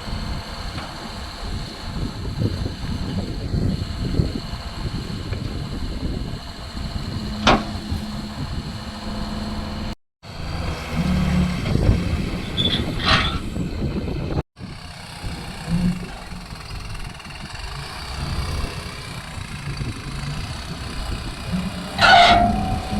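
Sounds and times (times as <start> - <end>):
heavy engine rumbling: 0.0 - 22.9
sharp metal clank: 7.2 - 9.9, 21.5 - 22.9.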